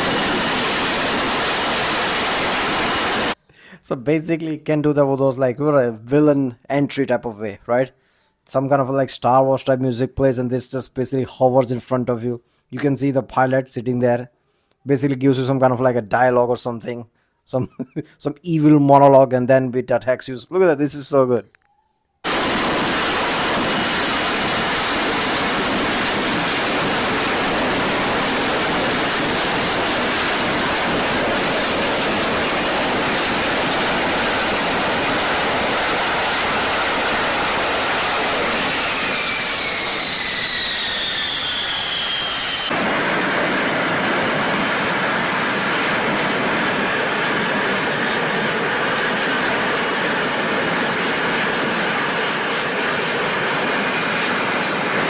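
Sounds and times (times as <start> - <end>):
jet engine roaring: 0.0 - 3.4, 22.3 - 55.0
high whine falling in pitch: 22.2 - 44.5.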